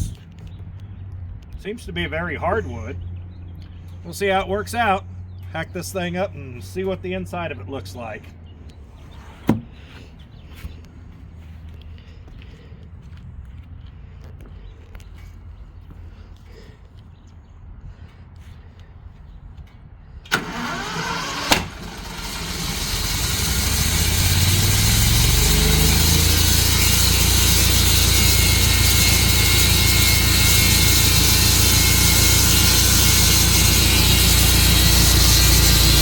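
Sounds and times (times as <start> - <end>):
gasoline engine starting and running: 20.2 - 36.0.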